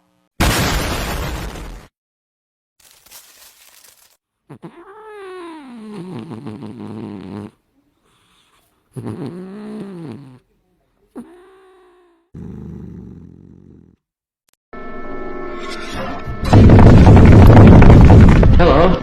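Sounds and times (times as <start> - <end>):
cat yowling: 4.5 - 6.1.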